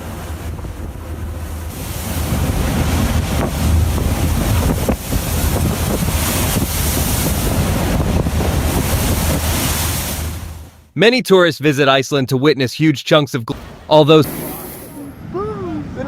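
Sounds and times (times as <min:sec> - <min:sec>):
strong wind buffeting microphone: 0:00.0 - 0:10.6
rough seas: 0:00.0 - 0:10.9, 0:13.5 - 0:16.0.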